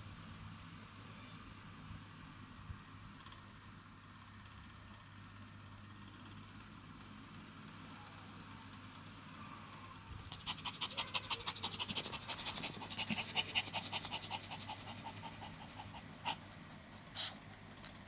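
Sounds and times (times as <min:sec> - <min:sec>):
dog sniffs: 0:10.2 - 0:17.8
dog panting: 0:10.2 - 0:18.0.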